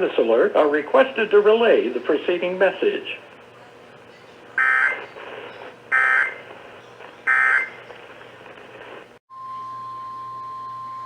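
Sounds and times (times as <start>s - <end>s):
buzzing digital tone bursts: 4.6s - 6.4s.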